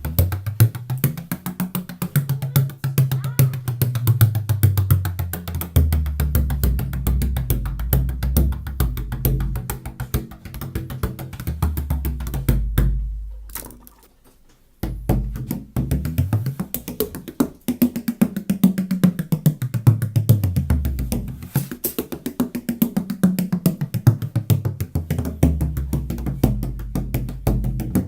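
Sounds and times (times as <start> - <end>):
frame drum booming strokes: 5.9 - 11.1.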